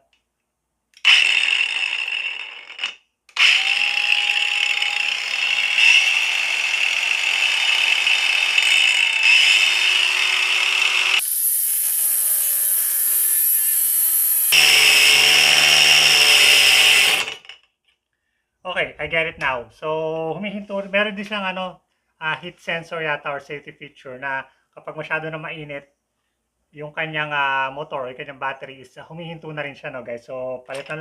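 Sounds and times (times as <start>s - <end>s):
angle grinder cutting steel: 1.0s - 17.5s.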